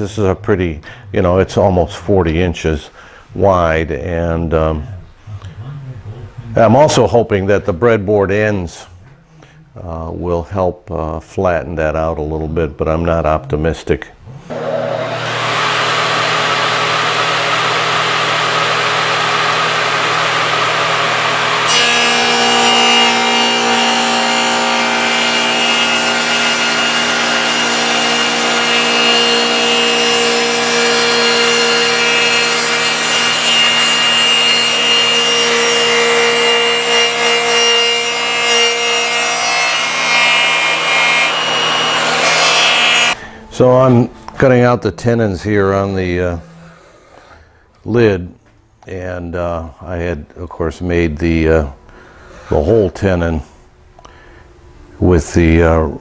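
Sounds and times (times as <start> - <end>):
radial arm saw cutting wood: 14.4 - 43.2.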